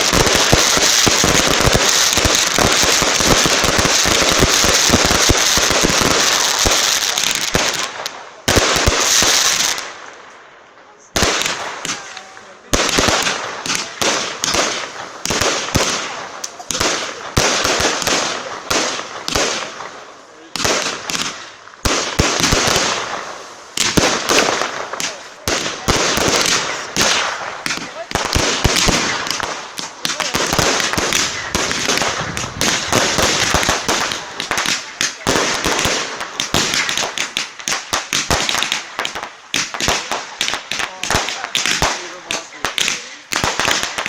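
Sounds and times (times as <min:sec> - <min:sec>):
fireworks bangs: 0:00.0 - 0:44.0
fireworks crackling hiss: 0:00.0 - 0:44.0.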